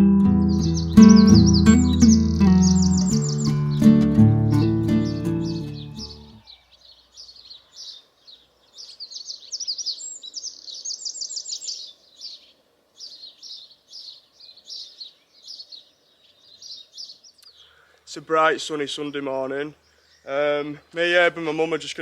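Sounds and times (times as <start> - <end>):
music track: 0.0 - 6.4
birds chirping and trilling: 0.2 - 22.0.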